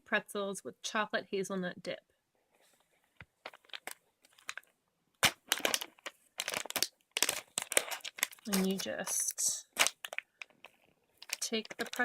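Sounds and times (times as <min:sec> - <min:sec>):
plastic packaging crinkling: 0:03.4 - 0:12.0.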